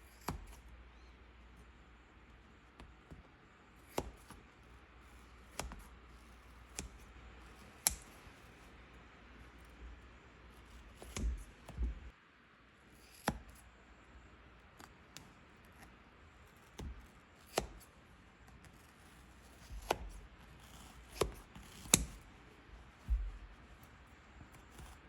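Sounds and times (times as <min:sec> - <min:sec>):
scissors snipping: 0:00.0 - 0:00.7, 0:02.8 - 0:04.5, 0:05.1 - 0:08.8, 0:10.5 - 0:12.0, 0:13.0 - 0:13.6, 0:16.5 - 0:17.9, 0:18.5 - 0:25.0
quiet handling noise: 0:00.1 - 0:12.2, 0:14.5 - 0:25.0.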